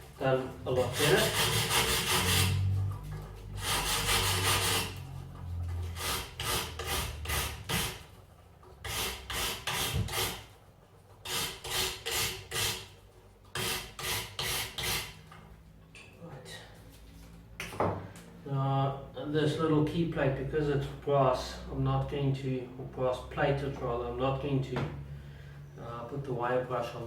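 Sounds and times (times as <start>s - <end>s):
wire brush scrubbing metal: 0.2s - 8.1s.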